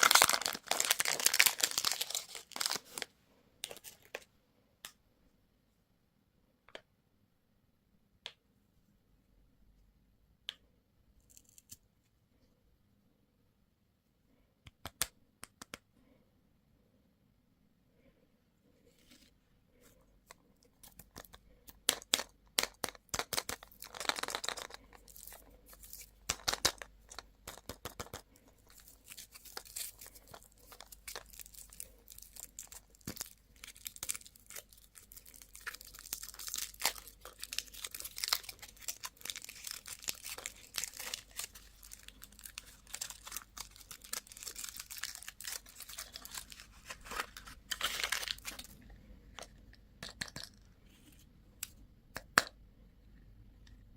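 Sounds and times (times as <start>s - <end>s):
plastic wrapper crinkling and tearing: 0.0s - 4.2s, 23.1s - 48.8s.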